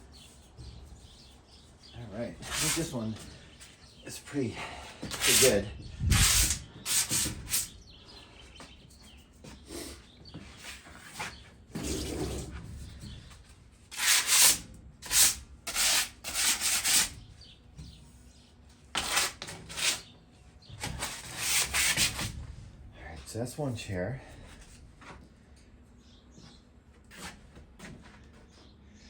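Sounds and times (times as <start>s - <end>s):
sandpaper scraping rusty metal: 2.3s - 3.2s, 5.0s - 7.8s, 10.6s - 12.6s, 13.9s - 17.2s, 19.0s - 20.1s, 20.8s - 22.4s.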